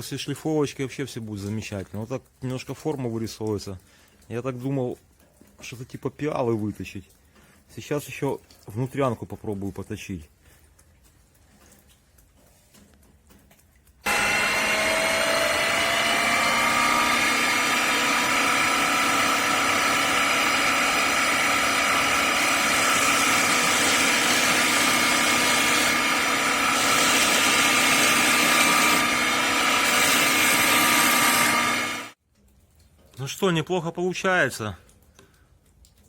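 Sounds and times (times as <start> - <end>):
wood lathe whine: 14.0 - 32.2
chisel cutting hiss: 14.1 - 32.2.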